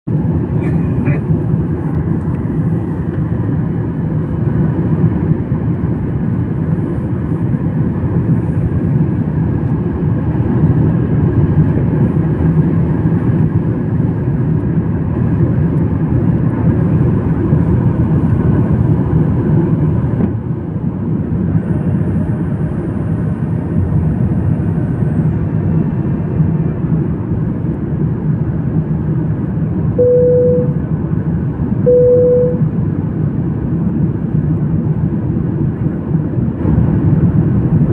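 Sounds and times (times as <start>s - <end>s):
airliner cabin engine drone: 0.1s - 37.9s
short beep: 30.0s - 30.8s, 31.9s - 32.6s.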